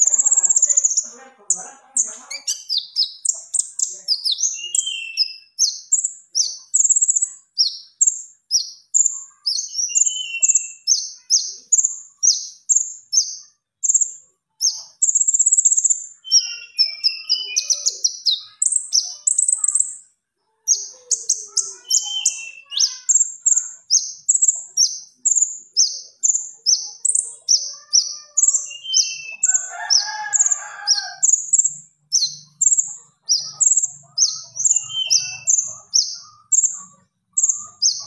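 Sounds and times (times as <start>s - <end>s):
songbird chirping: 0.0s - 38.0s
buzzy bird trills: 20.7s - 38.0s.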